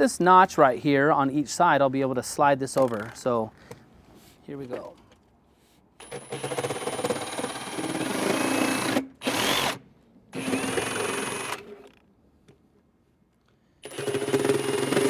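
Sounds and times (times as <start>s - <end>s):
power tool cutting pipe: 6.0s - 9.8s, 10.4s - 12.0s, 13.8s - 15.0s.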